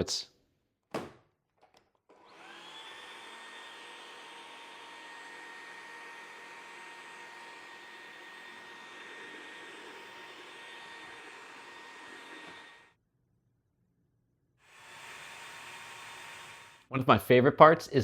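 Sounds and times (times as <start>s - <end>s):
stick vacuum running: 2.1s - 12.9s.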